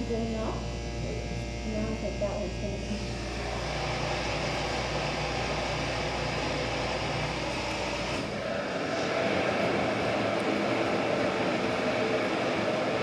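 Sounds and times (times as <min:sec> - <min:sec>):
elevator motor hum: 0:00.0 - 0:13.0
elevator rushing whir: 0:03.2 - 0:13.0.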